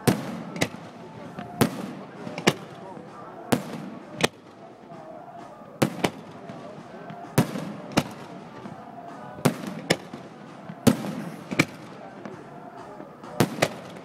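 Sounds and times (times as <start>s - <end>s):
fireworks bangs: 0.0s - 2.8s, 3.5s - 5.0s, 5.8s - 8.8s, 9.4s - 12.4s
background murmur: 0.0s - 14.0s.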